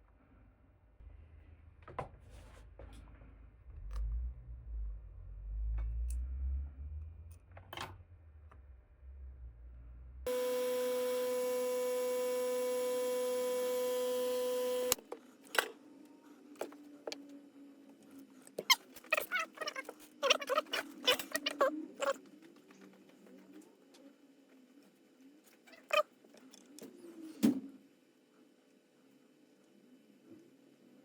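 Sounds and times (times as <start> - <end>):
multimeter continuity buzzer: 10.3 - 15.0.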